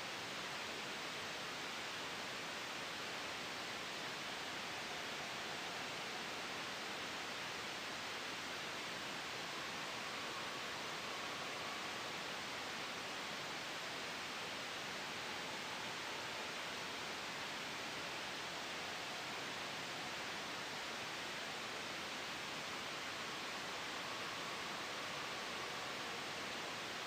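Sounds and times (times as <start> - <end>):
steady white noise hiss: 0.0 - 27.0.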